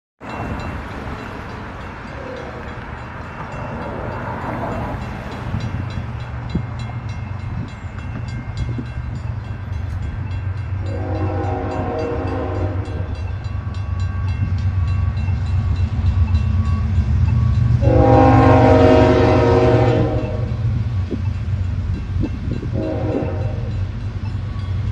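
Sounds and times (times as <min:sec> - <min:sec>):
crossing signal bell ticking: 0:00.2 - 0:18.9, 0:20.0 - 0:24.9
diesel locomotives rumbling: 0:00.2 - 0:24.9
locomotive horn blasts: 0:10.8 - 0:13.3, 0:17.7 - 0:20.8, 0:22.6 - 0:23.9.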